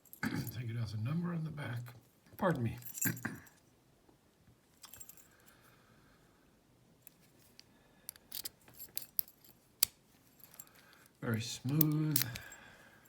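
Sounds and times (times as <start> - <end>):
small metallic clicks of lock: 7.1 - 11.1, 11.7 - 12.6.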